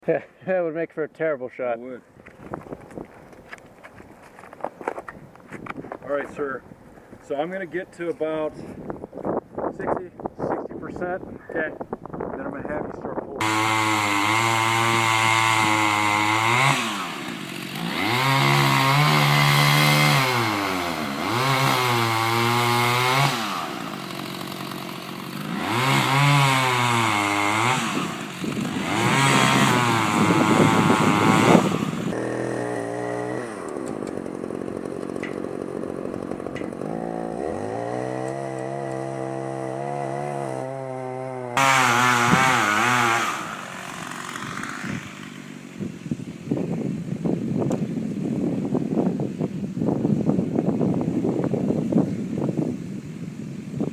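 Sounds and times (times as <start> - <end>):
chainsaw revving in wood: 13.4 - 46.8.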